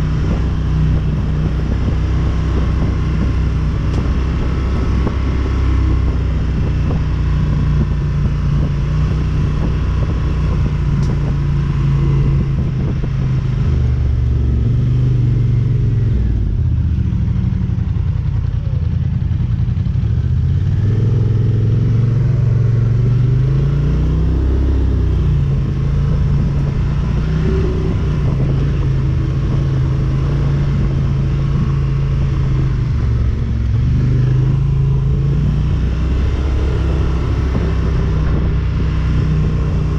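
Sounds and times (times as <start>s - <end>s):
atv engine revving: 19.9s - 39.9s.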